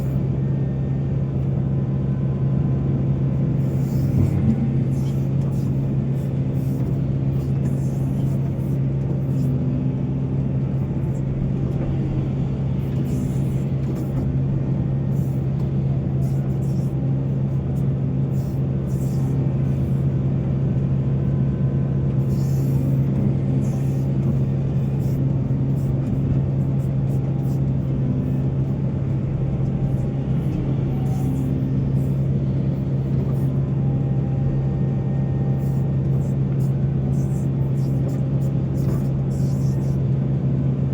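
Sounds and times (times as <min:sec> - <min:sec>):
heavy diesel engine running: 0:00.0 - 0:40.9.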